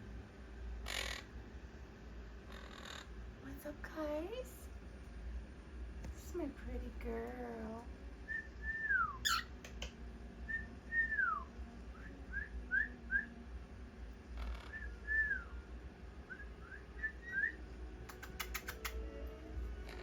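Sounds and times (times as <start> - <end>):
parrot whistling: 8.3 - 9.9, 10.5 - 13.3, 14.4 - 15.6, 16.3 - 19.0
sharp clicks: 18.0 - 19.0.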